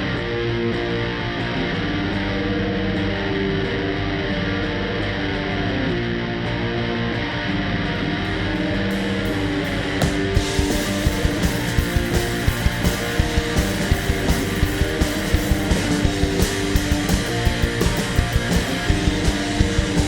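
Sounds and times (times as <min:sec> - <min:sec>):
electric guitar sustained chords: 0:00.0 - 0:20.0
live rock band playing: 0:08.2 - 0:20.0.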